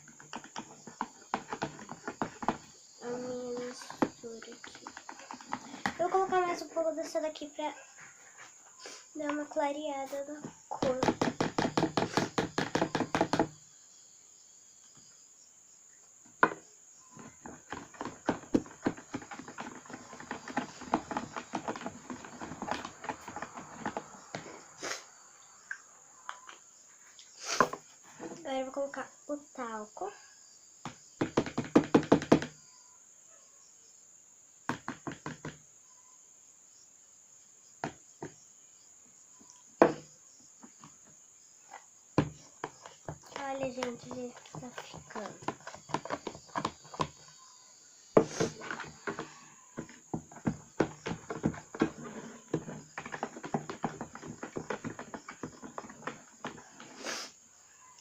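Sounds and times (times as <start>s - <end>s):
sharp knocks on hard surface: 10.8s - 13.6s, 16.4s - 16.6s, 30.8s - 32.6s, 39.8s - 40.1s.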